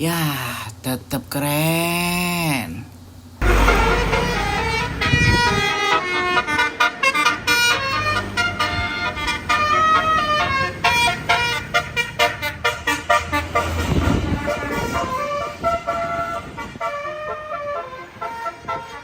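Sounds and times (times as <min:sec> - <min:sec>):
musical bus horn tooting: 0:03.4 - 0:19.0.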